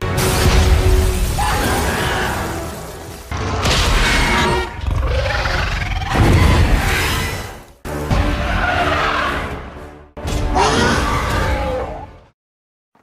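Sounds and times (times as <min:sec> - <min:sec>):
harsh monster cries: 0:08.4 - 0:09.6, 0:10.5 - 0:12.1.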